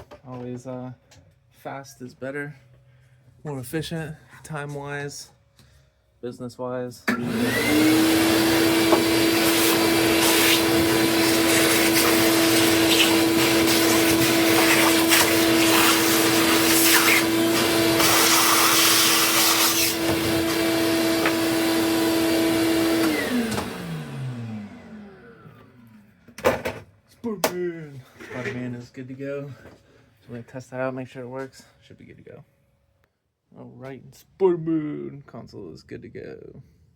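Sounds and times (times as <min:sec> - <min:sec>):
blower motor whine: 0:07.1 - 0:26.2.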